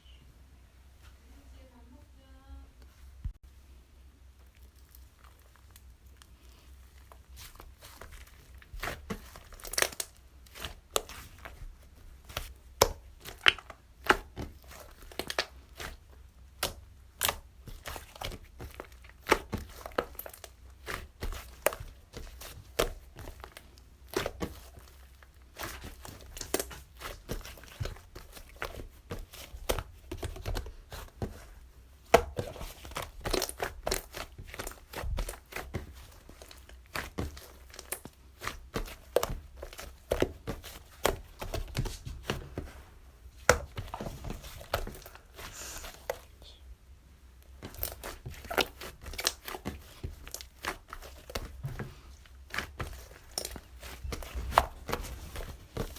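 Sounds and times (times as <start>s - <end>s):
slime crackling and popping: 4.4s - 11.7s, 12.3s - 42.0s, 47.4s - 51.6s.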